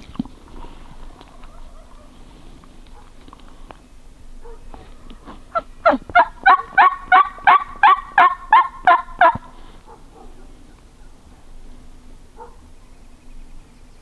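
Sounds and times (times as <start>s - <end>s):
turkey yelps: 1.3s - 2.2s, 4.4s - 10.5s.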